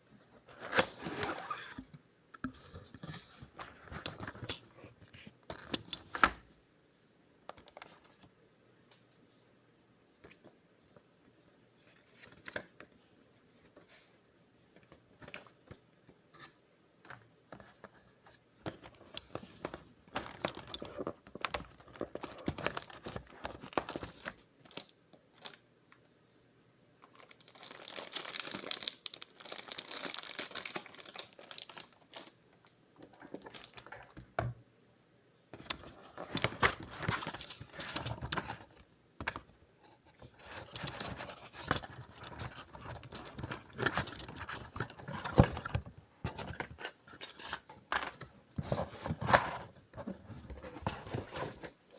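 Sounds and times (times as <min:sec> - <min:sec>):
plastic and paper wrapping crinkling: 0:18.7 - 0:25.6, 0:27.0 - 0:32.4, 0:33.1 - 0:34.2, 0:40.2 - 0:51.9.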